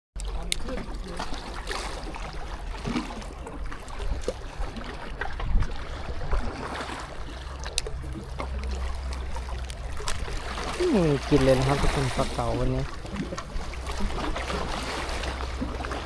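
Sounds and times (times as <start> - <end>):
sea water splashing at shoreline: 0.2 - 16.0
steady low rumble: 1.4 - 16.0.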